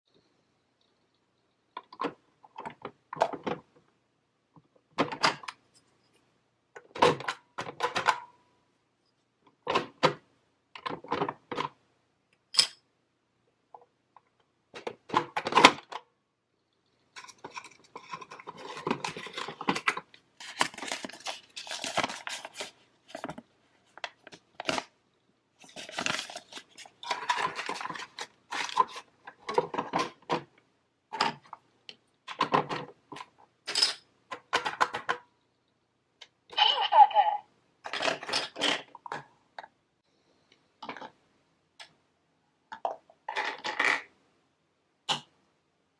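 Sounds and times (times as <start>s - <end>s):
plastic toy pieces clicking and clattering: 17.1s - 23.4s, 25.7s - 30.5s, 37.8s - 39.2s, 42.8s - 44.1s.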